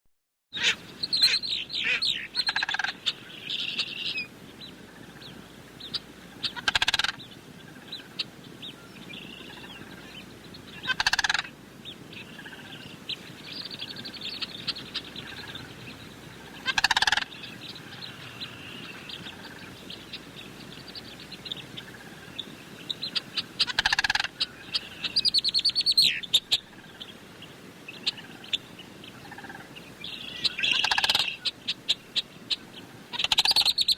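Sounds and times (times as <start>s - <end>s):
cranes calling: 0.6s - 27.2s, 27.9s - 33.9s.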